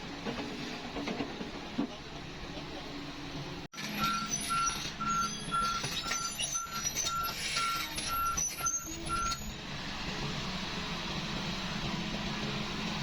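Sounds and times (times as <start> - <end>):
diesel engine running: 0.0 - 13.0
excavator warning alarm beeping: 3.8 - 9.5.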